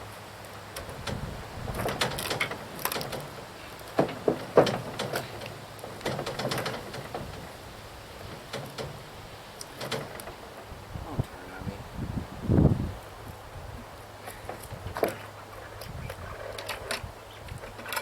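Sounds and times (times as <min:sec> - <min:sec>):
wood knocking and scraping: 0:00.8 - 0:07.6, 0:08.2 - 0:11.3, 0:14.3 - 0:18.0.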